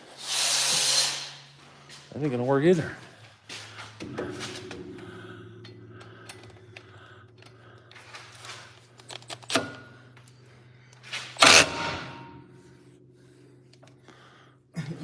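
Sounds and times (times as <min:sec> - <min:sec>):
steady low hum: 0:00.0 - 0:15.0
hand tools and metal parts clinking: 0:03.0 - 0:15.0.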